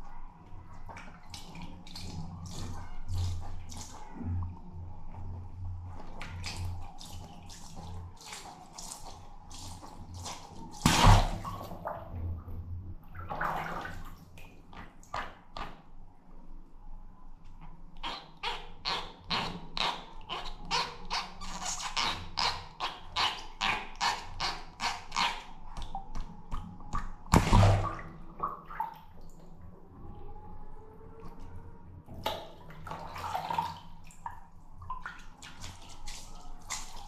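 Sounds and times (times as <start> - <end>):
water splashes and drips: 0.4 - 15.9, 21.4 - 30.1, 31.2 - 37.0
balloon pop: 27.3 - 28.2.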